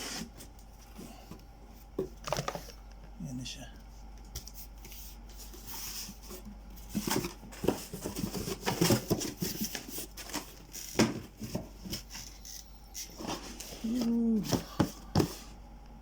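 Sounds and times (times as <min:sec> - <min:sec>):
cardboard packaging rustling: 0:04.8 - 0:12.4.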